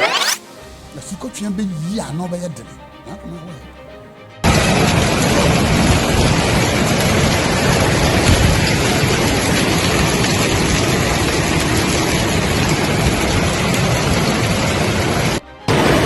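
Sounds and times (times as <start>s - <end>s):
heavy hail pelting down: 4.4s - 16.0s.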